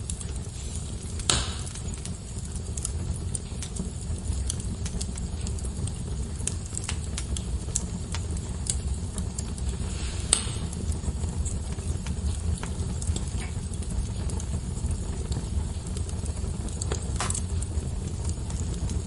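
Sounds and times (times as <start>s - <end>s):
fire crackling: 0.0s - 19.0s
low fire rumble: 0.0s - 19.0s
loud fire pop: 1.2s - 1.9s, 10.0s - 11.0s, 17.1s - 17.6s.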